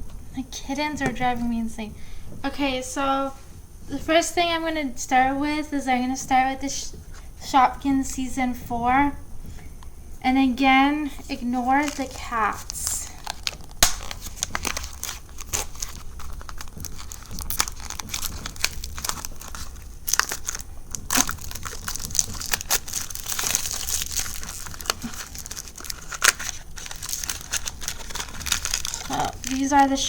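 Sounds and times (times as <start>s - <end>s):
packaging crinkling and tearing: 11.6s - 30.0s.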